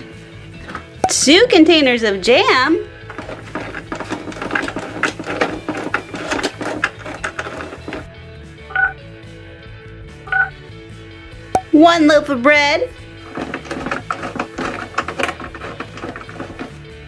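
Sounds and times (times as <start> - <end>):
plastic toys clattering: 0.6 - 1.0, 3.1 - 8.1, 13.2 - 16.8
toy scanner beeps: 8.7 - 9.0, 10.3 - 10.5.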